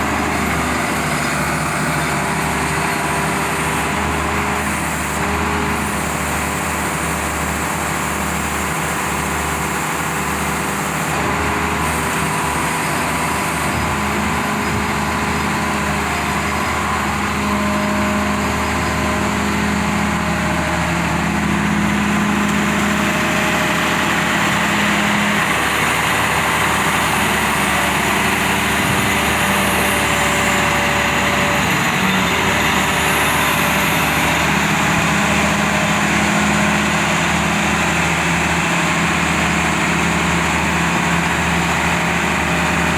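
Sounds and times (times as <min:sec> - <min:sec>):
excavator diesel engine humming: 0:00.0 - 0:42.9.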